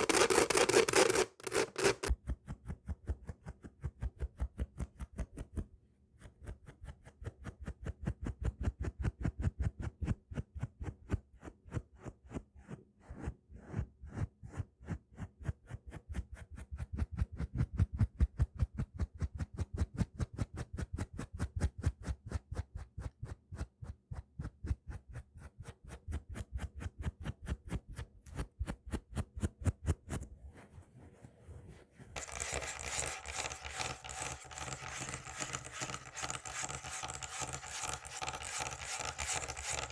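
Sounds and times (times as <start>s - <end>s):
fingernails scratching and tapping: 0.0s - 2.1s, 32.2s - 39.9s
scratching on rough surface: 0.0s - 2.1s, 32.2s - 39.9s.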